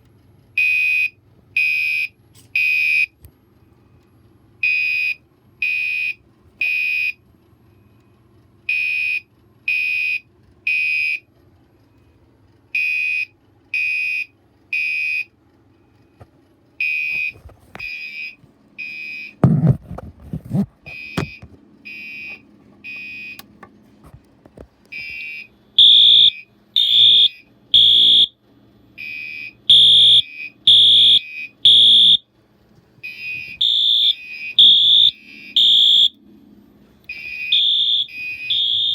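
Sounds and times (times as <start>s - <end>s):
fire alarm horn beeps: 0.6s - 3.2s, 4.6s - 7.2s, 8.7s - 11.3s, 12.8s - 15.9s, 16.8s - 19.4s, 20.5s - 23.4s, 24.9s - 32.3s, 33.0s - 36.2s, 37.1s - 38.9s
higher-pitched alarm horn: 29.0s - 32.2s, 33.1s - 36.2s, 37.1s - 38.9s.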